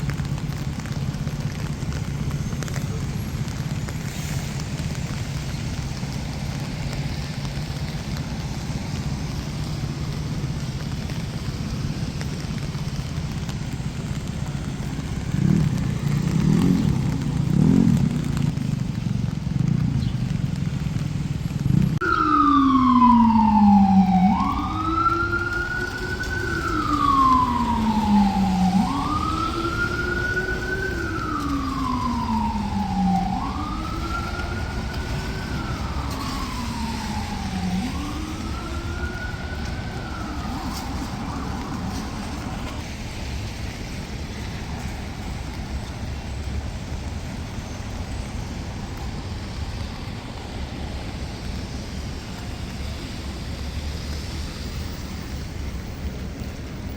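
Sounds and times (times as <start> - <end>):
street traffic: 0.0 - 56.9
emergency siren wailing: 0.2 - 56.9.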